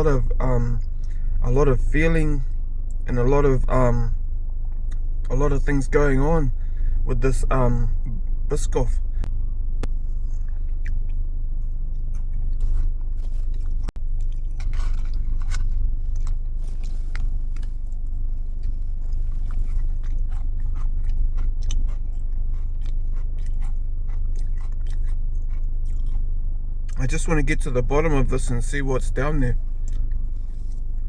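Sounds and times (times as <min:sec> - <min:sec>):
chewing crunchy biscuit: 0:09.9 - 0:31.0.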